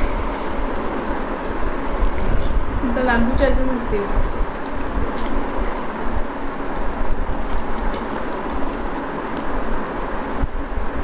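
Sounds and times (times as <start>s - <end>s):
wet eating clicks and smacks: 4.1s - 9.6s.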